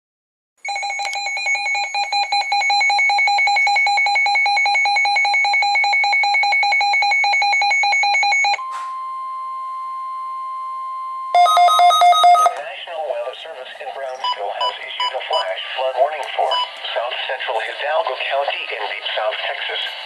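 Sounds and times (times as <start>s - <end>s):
steady alarm tone: 0.6s - 12.6s.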